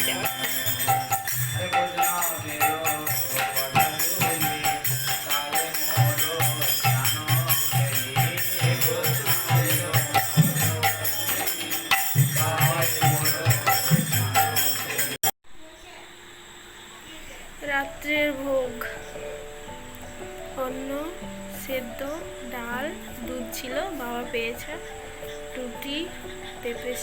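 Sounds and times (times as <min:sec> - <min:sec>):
jingling hand cymbals: 0:00.0 - 0:15.3
steady drum beat: 0:00.0 - 0:15.3
voices singing a chant: 0:00.0 - 0:15.3.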